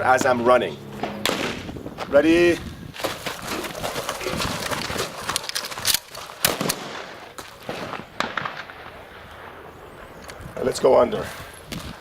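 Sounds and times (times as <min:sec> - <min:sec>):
running footsteps: 0:00.0 - 0:07.7
shotgun loading clicks and clacks: 0:04.5 - 0:07.6.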